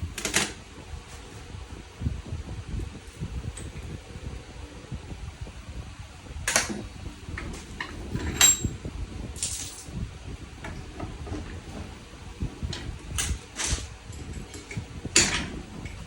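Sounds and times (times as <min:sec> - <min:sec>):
steady low hum: 0:00.0 - 0:16.0
metal tools clinking and scraping: 0:07.8 - 0:08.8.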